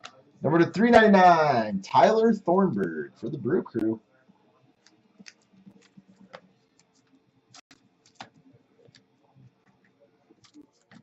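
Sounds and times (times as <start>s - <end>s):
trading cards and packaging handled: 4.8s - 9.1s.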